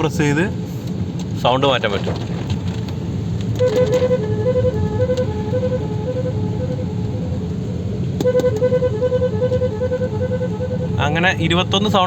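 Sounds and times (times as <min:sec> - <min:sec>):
low steady rumble: 0:00.0 - 0:12.0
electronic car horn beeping tune: 0:03.6 - 0:07.6, 0:08.2 - 0:11.5.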